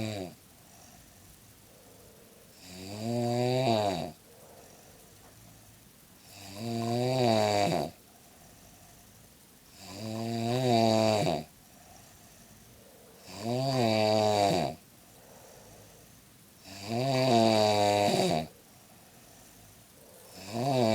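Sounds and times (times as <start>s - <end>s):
quiet breaths: 0.0s - 20.9s
woman snoring loudly: 2.6s - 4.2s, 6.2s - 8.0s, 9.7s - 11.5s, 13.2s - 16.0s, 16.6s - 18.6s, 20.2s - 20.9s.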